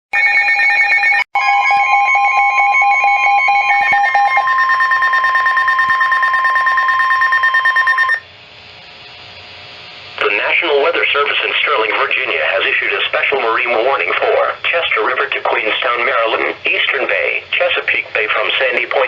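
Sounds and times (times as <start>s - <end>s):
loud steady alarm tone: 0.2s - 8.3s
rapid beeping tone: 1.4s - 8.2s
faint radio hiss: 10.0s - 19.0s.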